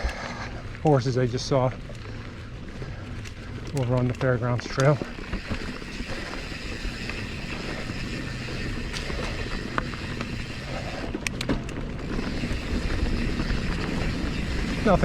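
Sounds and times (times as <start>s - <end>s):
bike tyres rumbling on dirt: 0.0s - 15.0s
sharp clicks and knocks: 11.2s - 12.0s.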